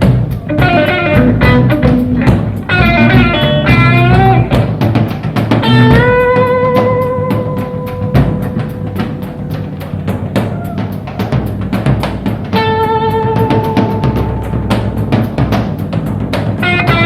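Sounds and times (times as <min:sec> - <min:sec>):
bass guitar: 0:00.0 - 0:17.0
drum kit beat: 0:00.0 - 0:17.0
electric guitar sustained notes: 0:00.5 - 0:04.6, 0:05.7 - 0:17.0.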